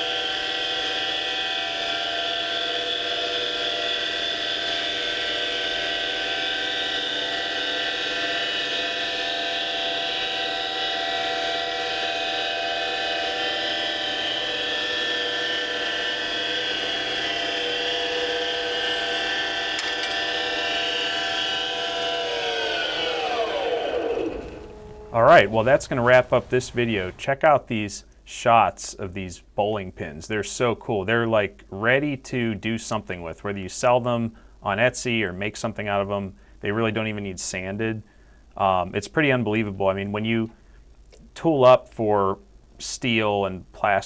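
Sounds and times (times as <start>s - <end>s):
lathe motor whining: 0.0s - 27.2s.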